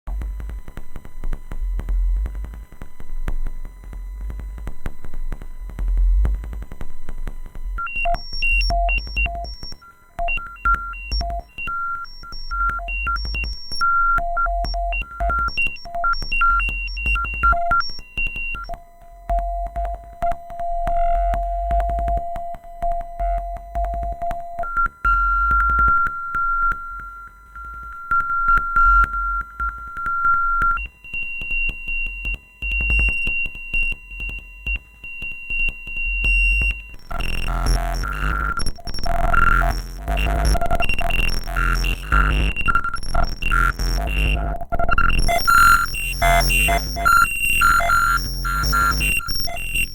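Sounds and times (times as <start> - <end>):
low pulsing beat: 0.1 - 31.1, 45.1 - 49.9
synthesized electronic tones: 7.8 - 49.9.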